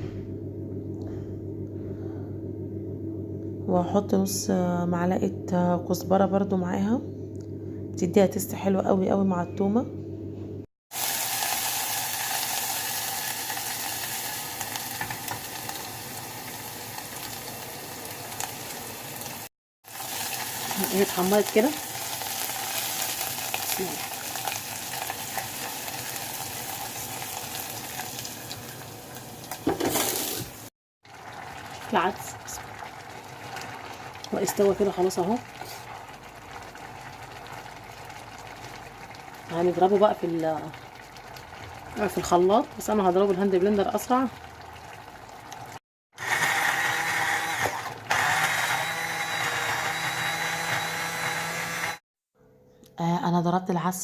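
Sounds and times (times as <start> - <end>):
garlic sizzling in oil: 10.9 - 45.8
hand blender motor whine: 46.1 - 52.0.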